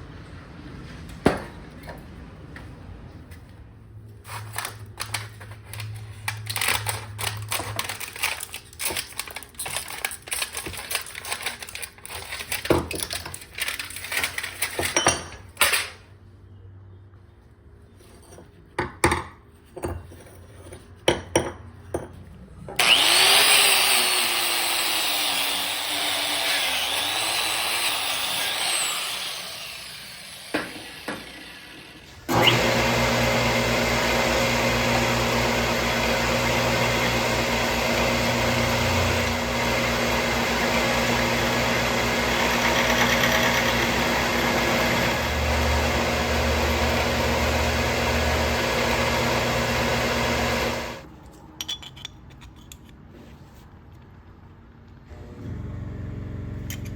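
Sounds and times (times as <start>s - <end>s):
power tool cutting metal: 22.8s - 51.1s.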